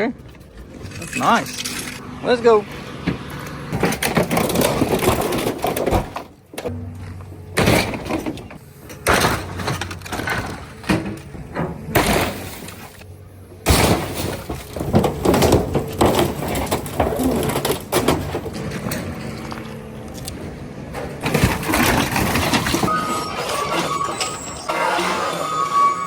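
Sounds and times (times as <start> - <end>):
excavator engine running: 0.0 - 26.0
metal crunching: 0.0 - 26.0
glass breaking: 11.9 - 13.0, 13.6 - 18.4.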